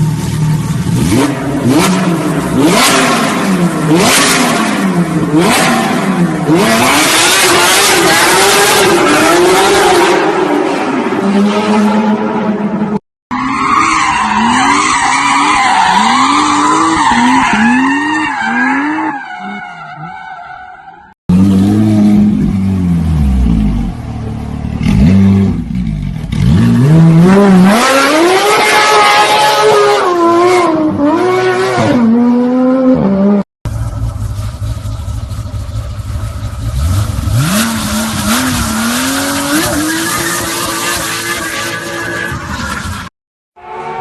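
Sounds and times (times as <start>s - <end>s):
car engine revving: 0.2s - 12.8s, 21.3s - 42.0s.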